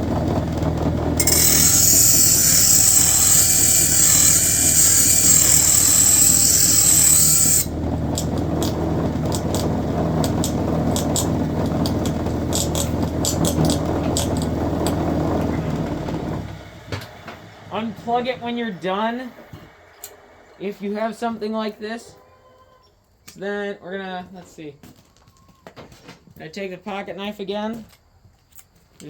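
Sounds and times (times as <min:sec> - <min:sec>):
bench grinder motor humming: 0:00.0 - 0:18.8
metal grinding hiss: 0:01.2 - 0:07.7.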